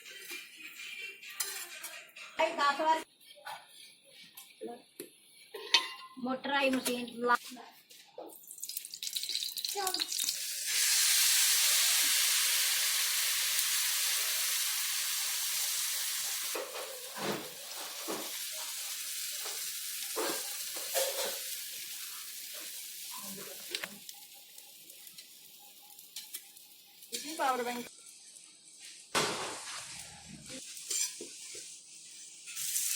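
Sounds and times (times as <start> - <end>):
batter sizzling on a griddle: 8.4 - 30.0, 30.6 - 32.9.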